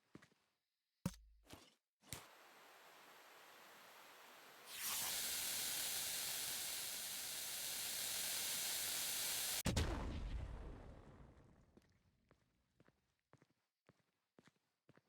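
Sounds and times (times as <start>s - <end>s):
firework hissing: 4.6s - 9.7s
firework bang and boom: 9.6s - 11.6s.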